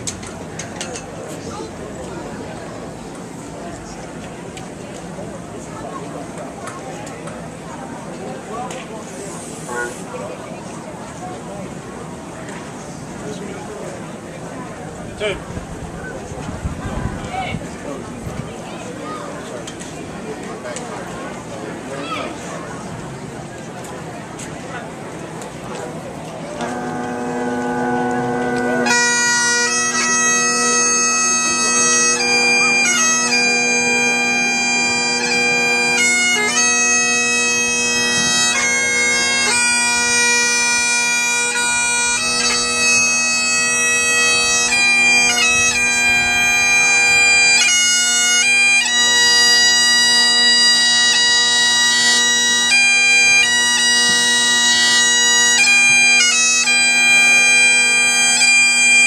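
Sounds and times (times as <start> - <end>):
bagpipes playing a slow tune: 26.6 - 59.0.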